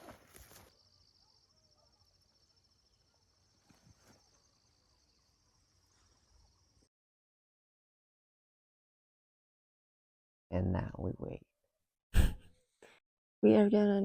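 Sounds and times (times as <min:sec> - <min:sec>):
insects trilling: 0:00.1 - 0:06.9.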